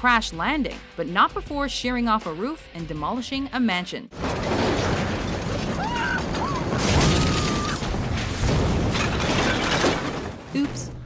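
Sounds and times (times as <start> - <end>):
crashing tearing wreckage: 4.2 - 10.6.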